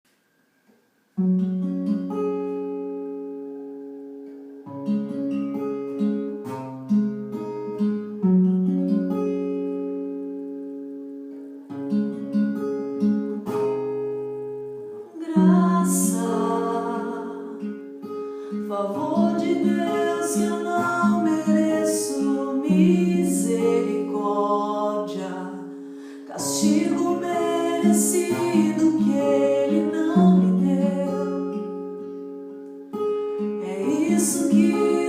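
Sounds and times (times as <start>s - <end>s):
acoustic guitar chords: 0.1s - 35.0s
person singing: 15.0s - 17.8s, 18.5s - 31.8s, 33.5s - 35.0s.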